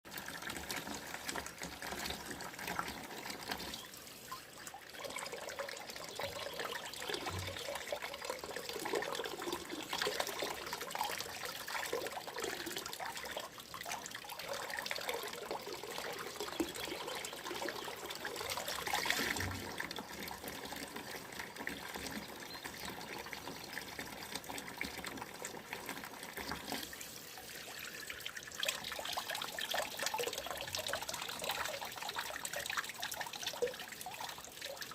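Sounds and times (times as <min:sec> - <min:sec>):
water trickling and gurgling: 0:00.1 - 0:34.9.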